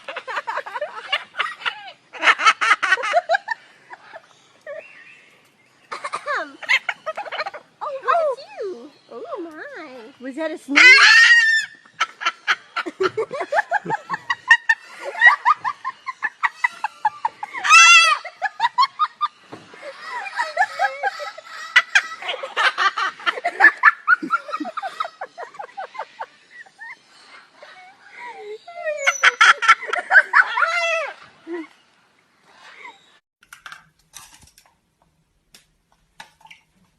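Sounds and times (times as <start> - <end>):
parrots chattering and laughing: 0.0 - 5.1, 5.8 - 9.2, 9.8 - 31.8, 32.5 - 33.2
shrill parrot calls: 10.8 - 11.7.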